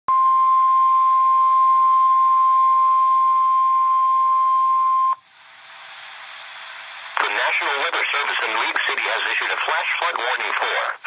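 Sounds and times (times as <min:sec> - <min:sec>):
radio hiss: 0:05.3 - 0:11.0.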